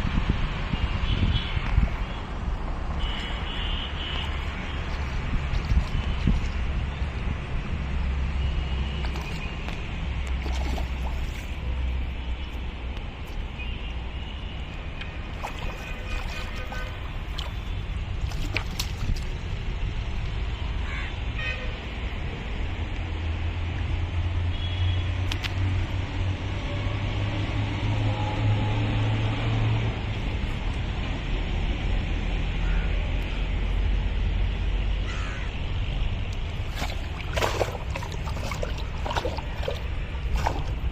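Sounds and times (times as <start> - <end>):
water sloshing and splashing: 1.6 - 7.3, 8.8 - 19.8, 36.2 - 40.9.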